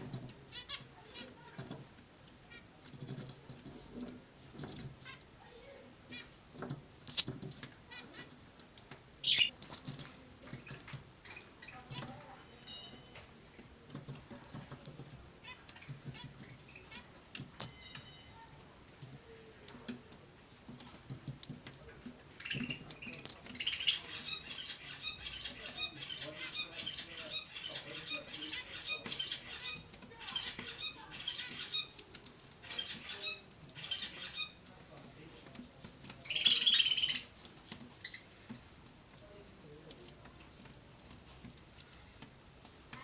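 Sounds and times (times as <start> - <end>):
finch chicks cheeping: 7.9 - 9.8, 10.5 - 14.7, 15.4 - 18.6, 22.3 - 35.0, 36.0 - 38.4.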